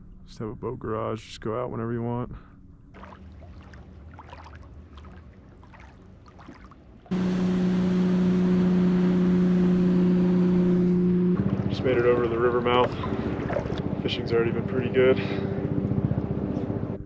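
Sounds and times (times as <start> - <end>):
faint water and hull noise: 2.5 - 7.4, 10.6 - 17.0
motor drone with low hum: 2.6 - 17.0.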